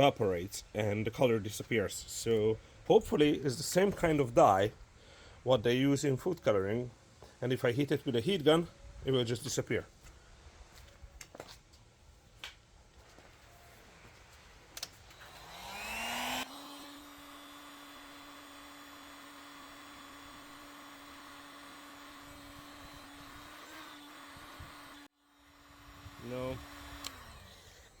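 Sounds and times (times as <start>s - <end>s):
heat gun fan whine: 13.4s - 28.0s.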